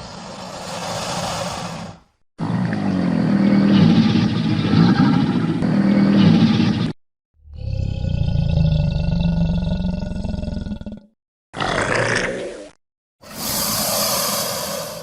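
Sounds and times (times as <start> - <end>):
crocodile growling: 7.4 - 12.7
crocodile hissing: 13.2 - 15.0.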